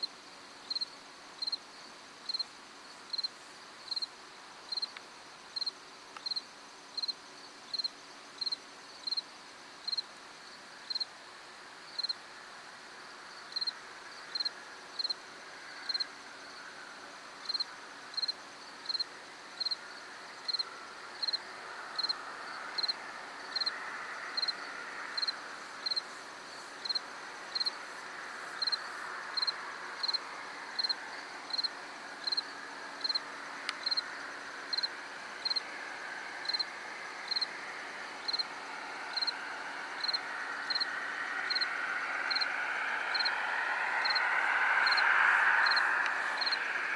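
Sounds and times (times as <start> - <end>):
cricket chirping: 0.0 - 46.9
insects trilling: 0.0 - 46.9
faint distant rushing: 20.0 - 46.9.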